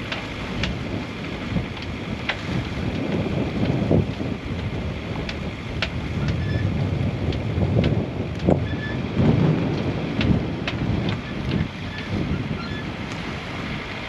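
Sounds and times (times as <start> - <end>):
wind buffeting microphone: 0.0 - 14.0
sharp clicks and knocks: 4.6 - 6.4, 7.3 - 8.7, 9.7 - 12.1.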